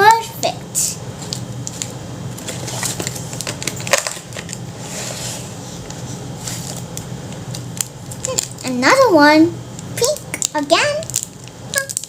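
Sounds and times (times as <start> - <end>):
packaging crinkling: 1.2 - 4.7, 10.0 - 12.0.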